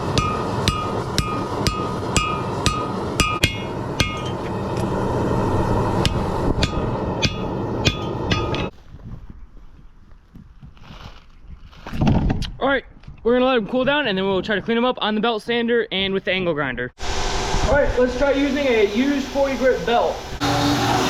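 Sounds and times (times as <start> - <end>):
hammer ringing on anvil: 0.0 - 4.5, 6.0 - 8.7
steady rushing noise: 0.0 - 8.7, 17.0 - 20.4.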